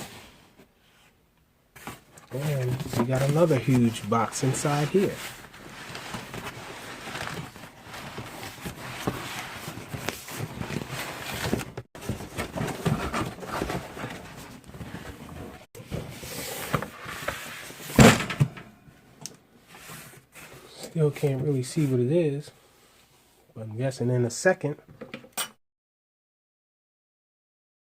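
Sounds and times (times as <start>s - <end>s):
cardboard box scraping and rustling: 1.9s - 17.8s.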